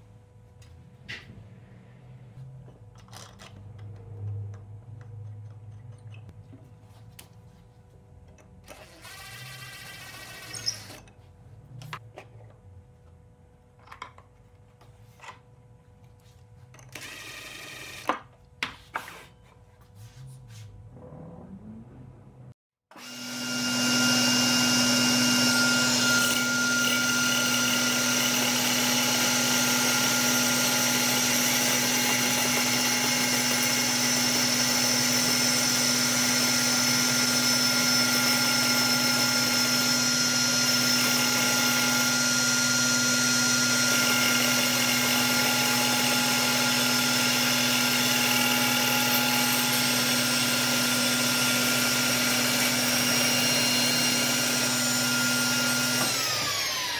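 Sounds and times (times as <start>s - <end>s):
power tool motor whining: 8.7s - 11.0s, 16.9s - 18.1s, 22.9s - 56.9s.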